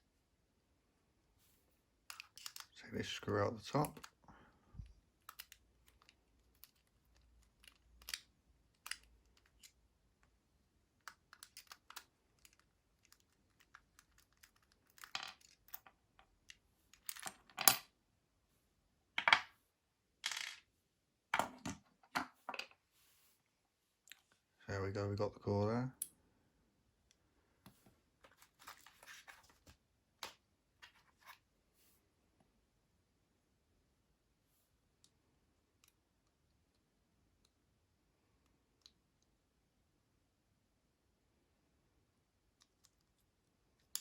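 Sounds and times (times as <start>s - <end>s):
metal parts clattering: 2.1s - 2.7s
padlock metallic clicks: 11.0s - 13.2s.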